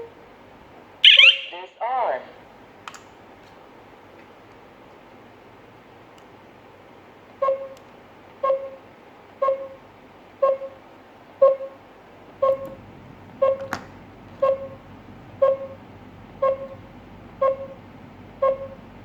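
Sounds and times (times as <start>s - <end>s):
alarm panel short beeps: 1.0s - 1.7s, 17.4s - 17.8s.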